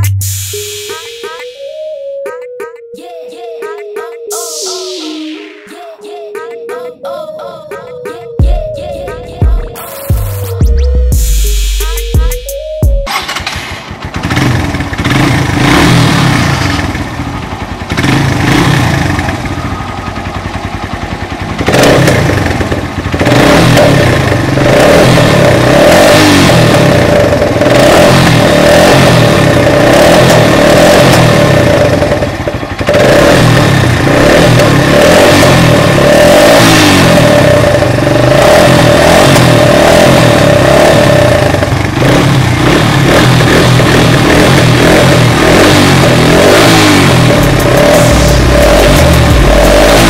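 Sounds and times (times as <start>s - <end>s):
motorcycle engine revving: 13.1s - 50.0s.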